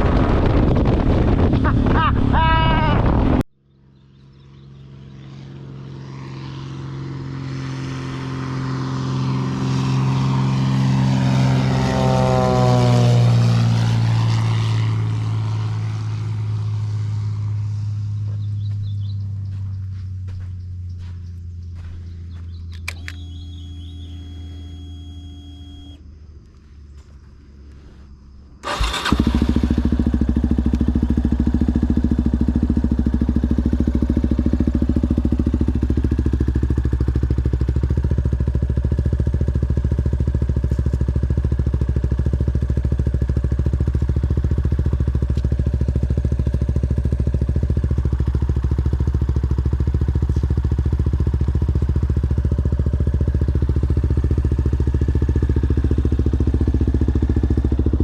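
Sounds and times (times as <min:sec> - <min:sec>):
motorcycle engine idling: 0:18.1 - 0:26.0, 0:28.6 - 0:58.0.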